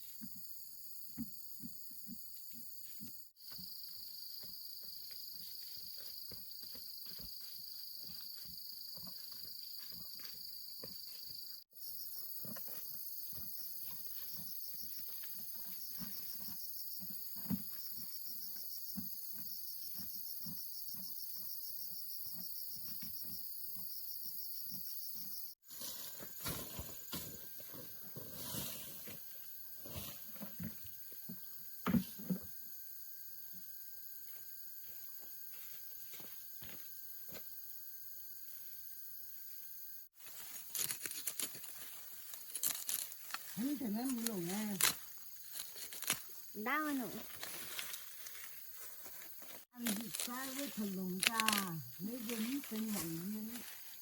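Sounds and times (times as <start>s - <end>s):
pulsing insect trill: 0.3s - 54.0s
shrill insect chorus: 37.6s - 54.0s.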